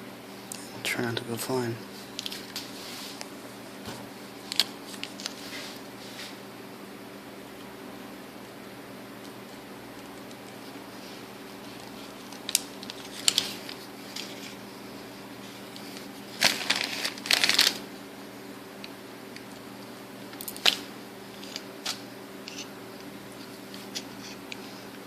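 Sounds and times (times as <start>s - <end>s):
steady low hum: 0.0s - 25.0s.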